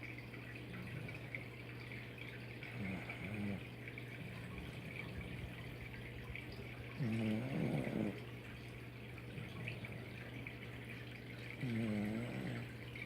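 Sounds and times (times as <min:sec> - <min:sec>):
steady low hum: 0:00.0 - 0:13.0
dog snoring: 0:00.7 - 0:01.4, 0:02.7 - 0:05.6, 0:07.0 - 0:08.3, 0:09.3 - 0:10.1, 0:11.6 - 0:12.8.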